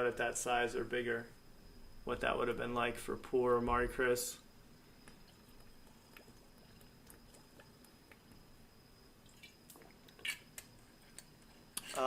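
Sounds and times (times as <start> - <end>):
faint high-pitched whine: 0.0 - 12.0.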